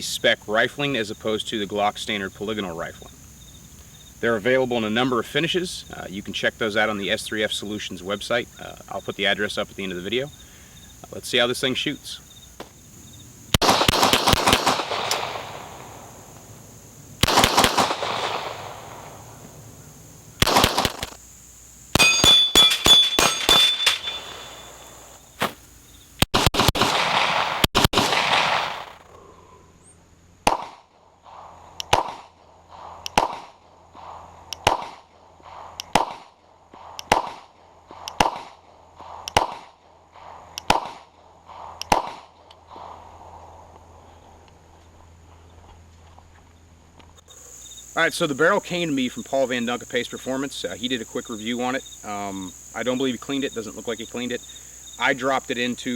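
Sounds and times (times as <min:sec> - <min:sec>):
pistol shots with echo: 0:13.6 - 0:15.8, 0:17.2 - 0:19.1, 0:20.4 - 0:21.2, 0:22.0 - 0:25.6, 0:26.4 - 0:29.0.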